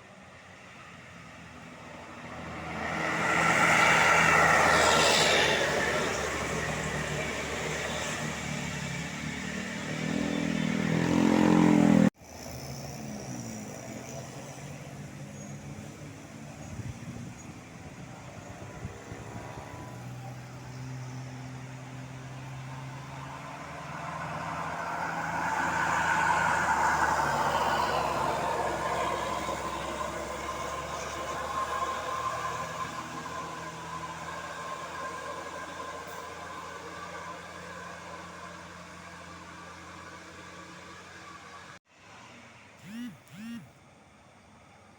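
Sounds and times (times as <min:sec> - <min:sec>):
bus engine revving uphill: 0:00.0 - 0:43.8
heavy vehicle passing: 0:01.3 - 0:16.4.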